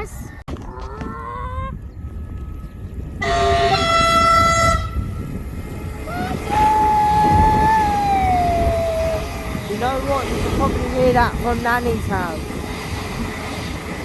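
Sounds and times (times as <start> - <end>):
train horn blasts: 3.2 - 5.3.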